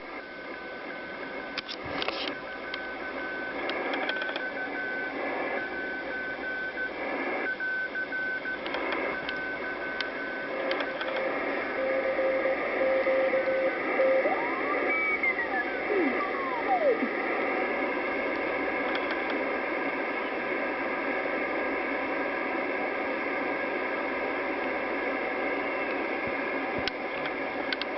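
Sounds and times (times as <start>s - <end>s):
radio band hiss: 0.0s - 27.9s
gliding radio whistles: 1.9s - 18.3s
morse code beat tones: 12.2s - 17.1s.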